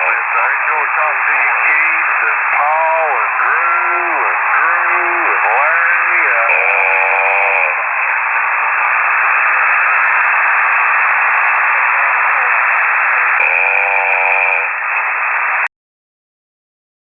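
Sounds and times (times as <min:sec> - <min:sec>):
snore-like droning sound: 0:00.0 - 0:08.1, 0:13.3 - 0:14.8
radio static hiss: 0:00.0 - 0:15.7.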